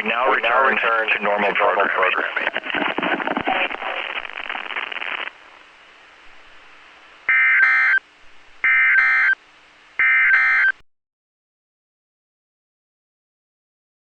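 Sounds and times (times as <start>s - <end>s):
faint radio hiss: 0.0s - 10.8s
digital data tone bursts: 7.3s - 8.0s, 8.6s - 9.4s, 10.0s - 10.7s.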